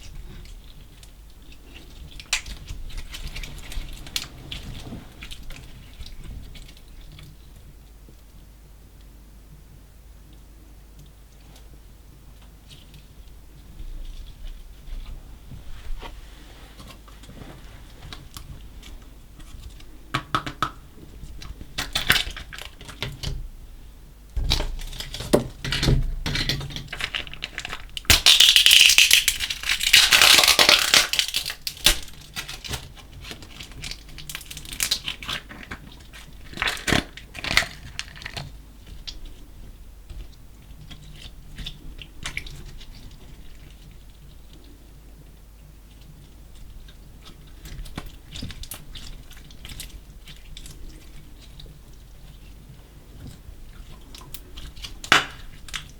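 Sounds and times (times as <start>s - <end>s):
sticky crackles and clicks: 24.3s - 39.4s.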